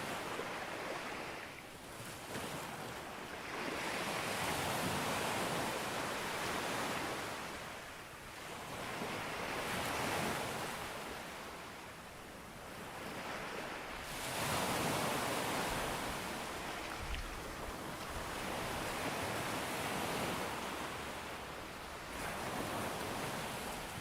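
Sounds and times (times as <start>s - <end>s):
sea waves breaking on beach: 12.9s - 24.0s.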